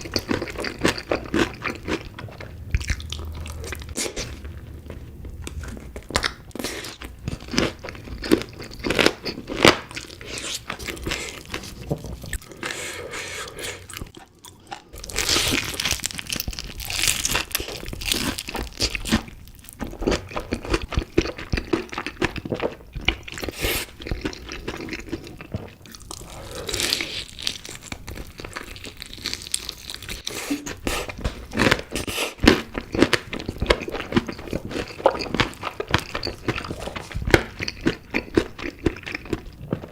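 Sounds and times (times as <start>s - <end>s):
crunching crispy chicken: 15.0s - 22.4s.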